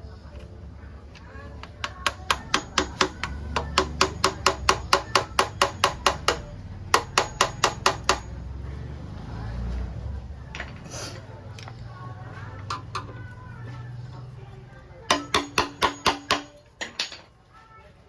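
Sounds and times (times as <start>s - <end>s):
hammer striking metal: 1.6s - 8.4s, 15.1s - 17.2s.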